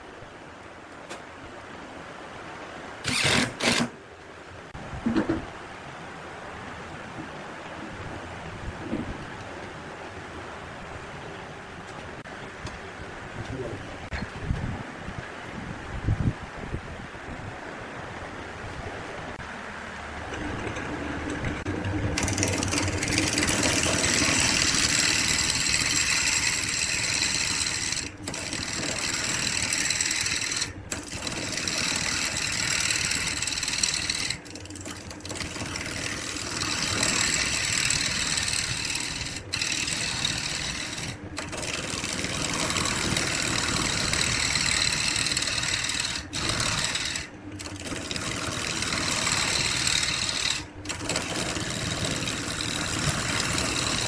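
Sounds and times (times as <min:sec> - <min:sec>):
woodworking power tool running: 0:03.0 - 0:04.0, 0:20.3 - 0:54.0.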